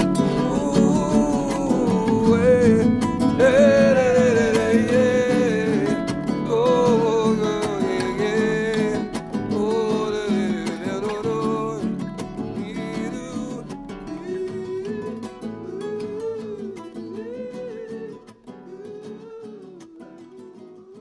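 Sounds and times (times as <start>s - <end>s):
gliding wordless melody: 0.0s - 16.1s
acoustic guitar: 0.0s - 21.0s.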